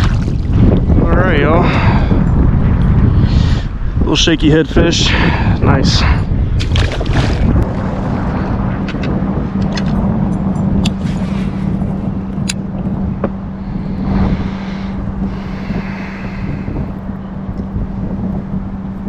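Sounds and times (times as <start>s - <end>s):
wind buffeting microphone: 0.0s - 19.0s
steady hum: 4.9s - 19.0s.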